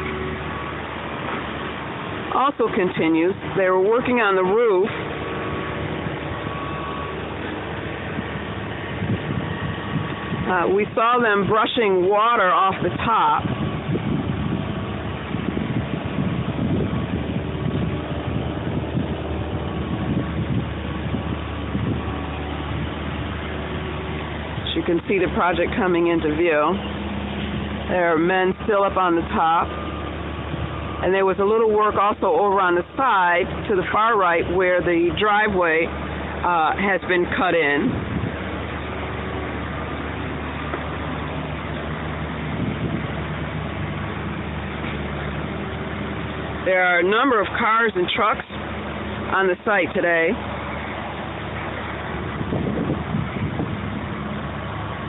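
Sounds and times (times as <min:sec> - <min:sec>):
car engine and road noise: 0:00.0 - 0:55.0
low buffeting: 0:00.0 - 0:55.0.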